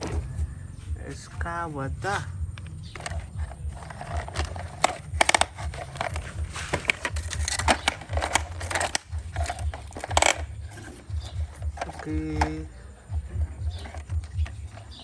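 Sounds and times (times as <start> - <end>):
steady low rumble: 0.0 - 9.8
rustling and handling noise: 0.0 - 15.0.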